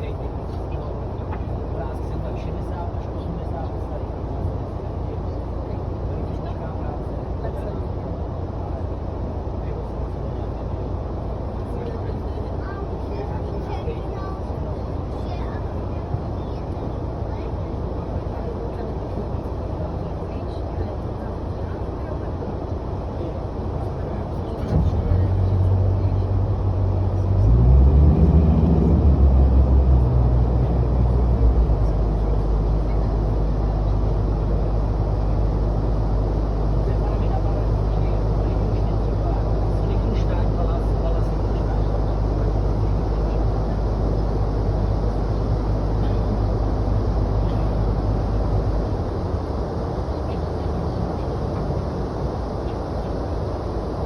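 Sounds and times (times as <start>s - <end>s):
boat engine hum: 0.0s - 54.0s
boat engine revving: 24.7s - 36.4s.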